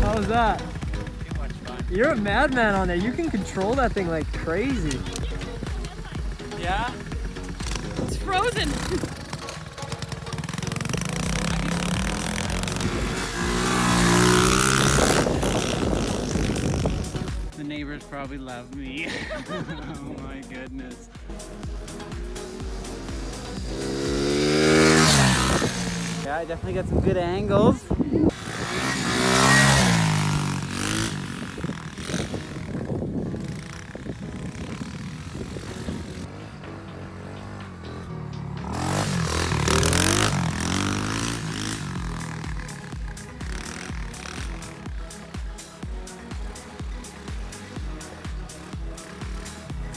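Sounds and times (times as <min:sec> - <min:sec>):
pit bike engine revving: 0:00.0 - 0:18.2, 0:18.8 - 0:49.9.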